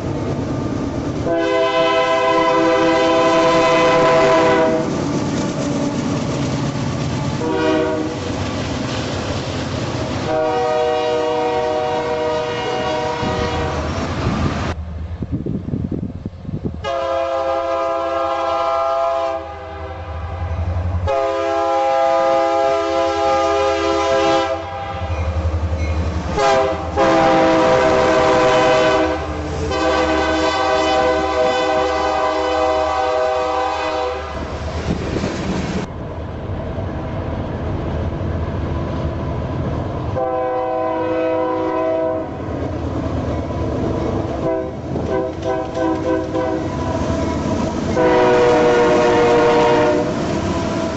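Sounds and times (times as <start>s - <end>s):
low train rumble: 0.0s - 50.9s
locomotive air horn blasts: 1.2s - 5.0s, 7.4s - 8.3s, 10.2s - 13.9s, 16.8s - 25.4s, 26.3s - 34.4s, 40.2s - 42.4s, 44.4s - 47.0s, 47.9s - 50.2s.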